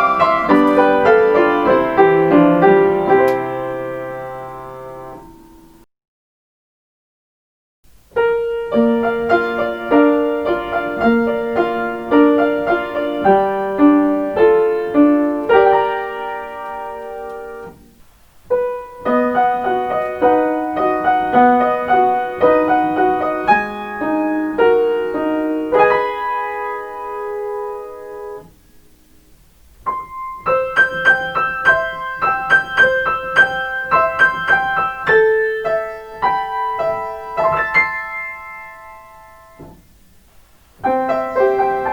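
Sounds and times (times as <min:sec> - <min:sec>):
solo piano chime melody: 0:00.0 - 0:05.9, 0:29.9 - 0:39.7, 0:40.8 - 0:41.9.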